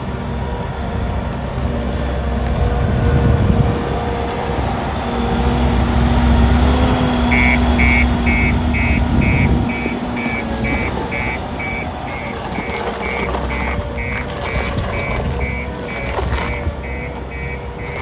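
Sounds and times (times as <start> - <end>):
diesel engine rumbling: 0.0 - 18.0
reversing alarm beeping: 7.3 - 18.0.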